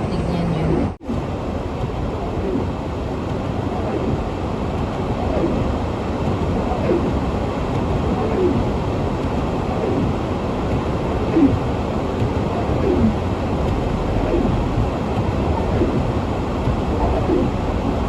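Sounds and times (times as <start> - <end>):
car engine and tyres on snowy road: 1.1 - 18.0.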